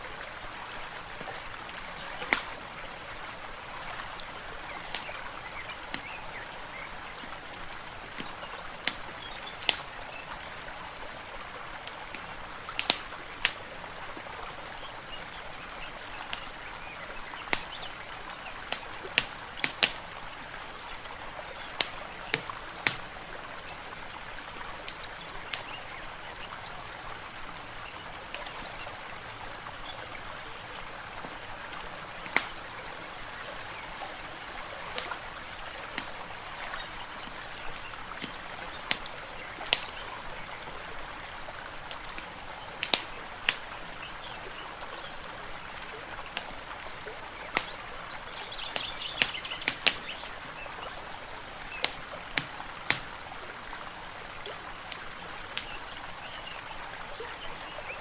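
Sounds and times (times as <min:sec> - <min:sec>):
running water: 0:00.0 - 0:58.0
wood fire crackling and popping: 0:42.8 - 0:43.6.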